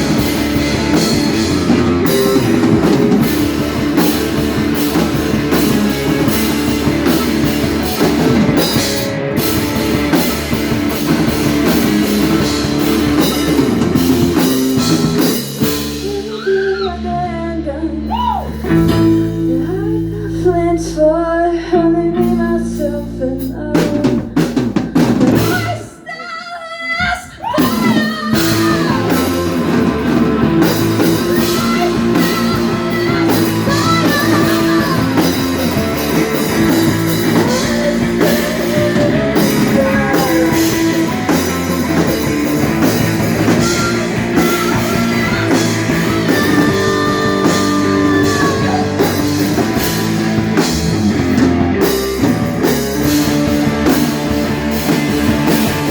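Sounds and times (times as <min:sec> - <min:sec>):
live rock band playing: 0:00.0 - 0:25.8, 0:27.5 - 0:55.9
person singing: 0:15.2 - 0:54.0.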